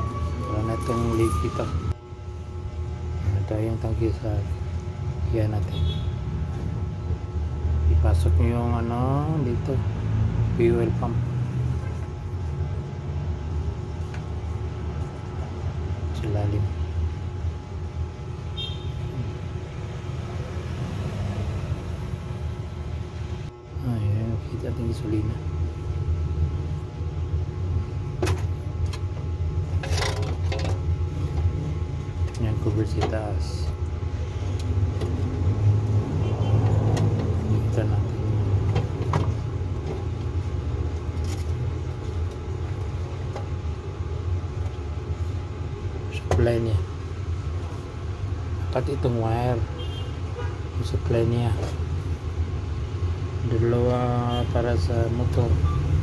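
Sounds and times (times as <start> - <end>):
high squeak: 0.0 - 1.9
low mechanical rumble: 0.0 - 56.0.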